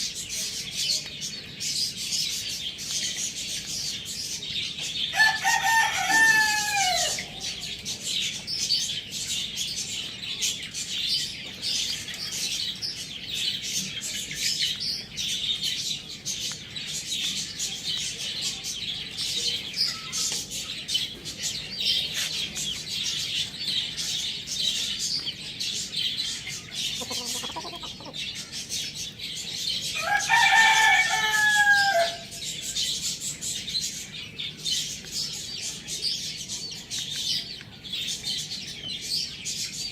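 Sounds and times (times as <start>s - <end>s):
small birds chirping: 0.0s - 39.9s
rooster crowing: 5.1s - 7.4s, 30.0s - 32.3s.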